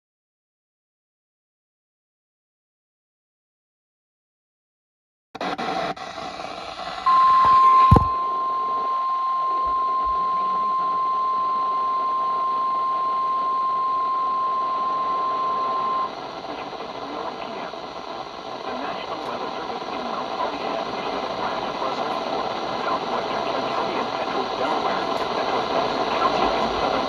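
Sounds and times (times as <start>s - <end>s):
radio hiss: 5.4s - 27.0s
high alert beep tone: 7.1s - 16.1s.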